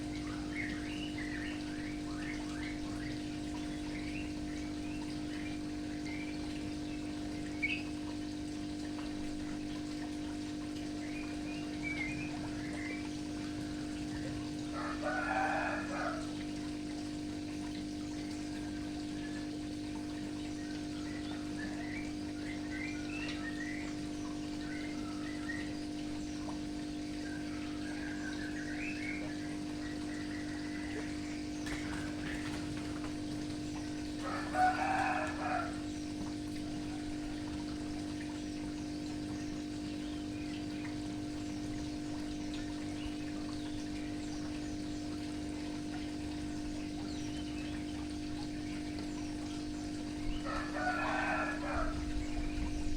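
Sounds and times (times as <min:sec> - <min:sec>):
birds chirping: 0:00.0 - 0:08.0, 0:10.8 - 0:16.4, 0:17.7 - 0:52.9
steady low hum: 0:00.0 - 0:52.9
chicken calling: 0:14.7 - 0:16.3, 0:34.2 - 0:35.8, 0:50.4 - 0:52.6.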